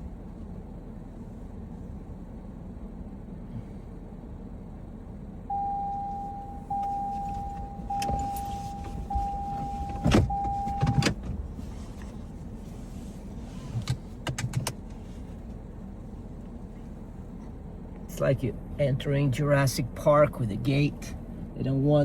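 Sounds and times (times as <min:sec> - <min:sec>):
low steady rumble: 0:00.0 - 0:22.0
car warning chime: 0:05.5 - 0:11.2.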